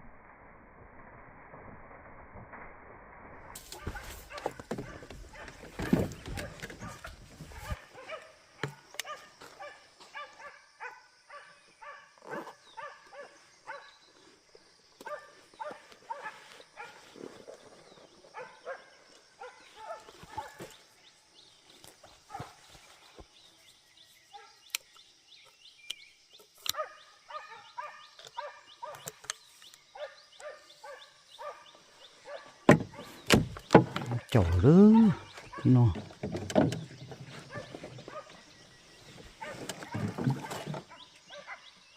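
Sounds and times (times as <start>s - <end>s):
dogs barking rapidly: 26.7s - 29.1s, 34.5s - 36.0s, 39.4s - 41.8s.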